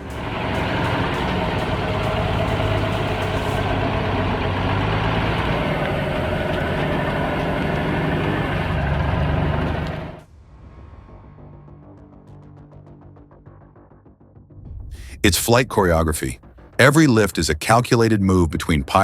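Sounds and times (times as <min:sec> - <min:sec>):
diesel truck engine running: 0:00.0 - 0:10.2.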